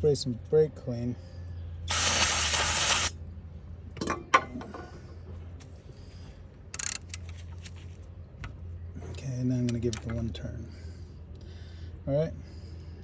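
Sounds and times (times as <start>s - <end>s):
aerosol can spraying hiss: 1.9s - 3.1s.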